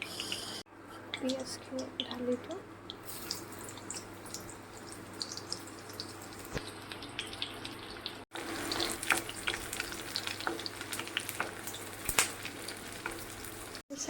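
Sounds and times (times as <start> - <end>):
onions sizzling in a pan: 2.9 - 14.0.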